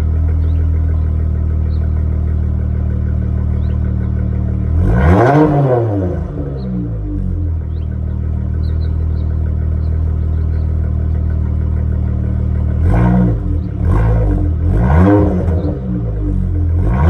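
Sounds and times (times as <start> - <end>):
car engine revving: 0.0 - 17.0
car exhaust idling: 0.0 - 17.0.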